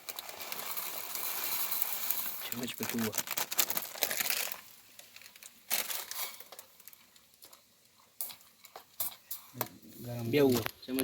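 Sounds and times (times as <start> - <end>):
packaging rustling and crinkling: 0.0 - 10.8.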